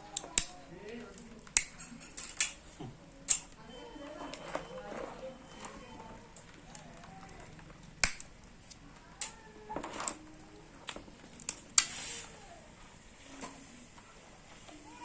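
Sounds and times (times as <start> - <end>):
crab shell cracking and clicking: 0.1 - 2.6, 3.2 - 3.6, 7.9 - 9.4.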